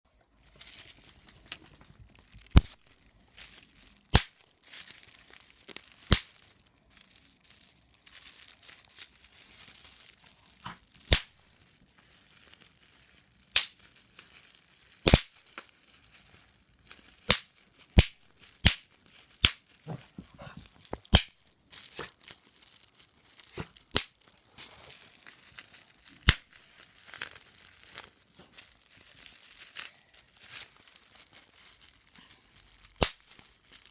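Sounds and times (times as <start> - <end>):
bubble wrap popping: 0.1 - 33.9
plastic crinkling: 0.1 - 33.9.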